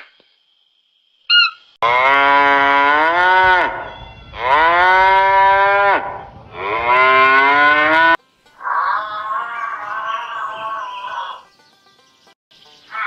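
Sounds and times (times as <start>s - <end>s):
cattle mooing: 1.8s - 11.4s.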